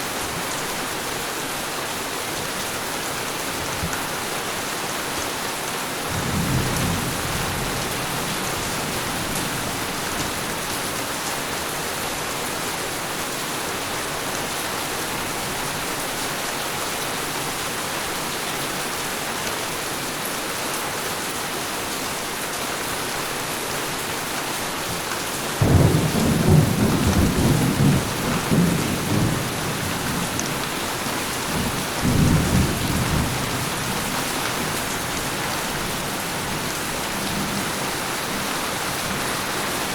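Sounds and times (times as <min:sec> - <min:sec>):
heavy rain hissing: 0:25.4 - 0:39.9
thunder rumbling: 0:25.6 - 0:38.4.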